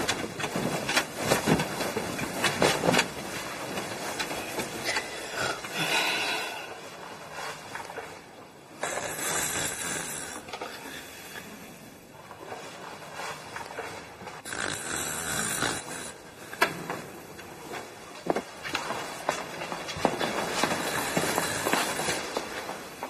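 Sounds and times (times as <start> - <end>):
person snoring: 8.8 - 11.4, 14.4 - 16.2.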